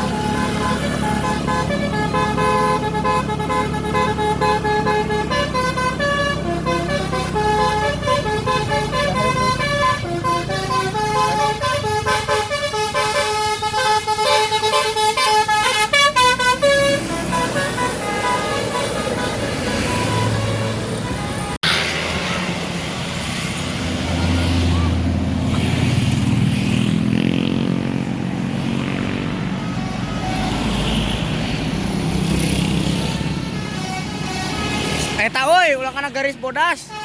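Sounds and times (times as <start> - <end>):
musical air horn tune: 0.0 - 21.6
bus engine rumble: 0.0 - 26.6.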